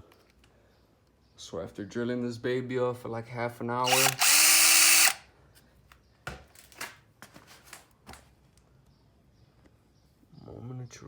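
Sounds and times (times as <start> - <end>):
power drill whining: 3.8 - 5.2.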